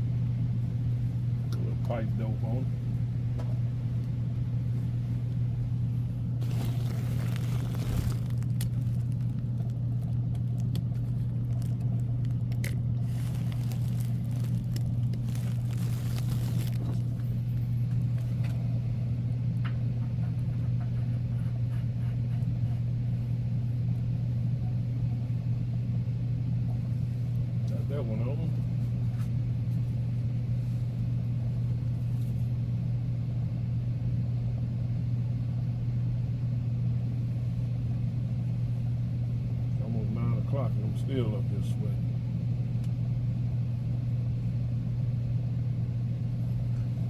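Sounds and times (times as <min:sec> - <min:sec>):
low mechanical hum: 0:00.0 - 0:47.0
scraping and rustling: 0:06.4 - 0:10.2, 0:13.0 - 0:17.3.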